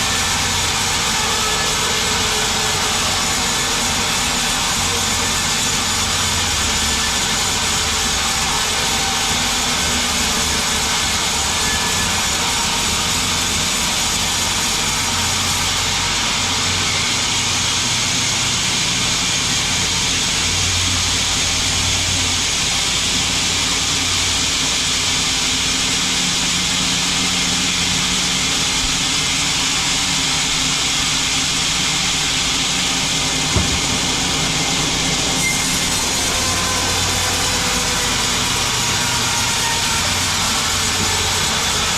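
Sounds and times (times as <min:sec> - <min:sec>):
sawmill machinery drone: 0:00.0 - 0:41.9
short knock: 0:33.5 - 0:34.4.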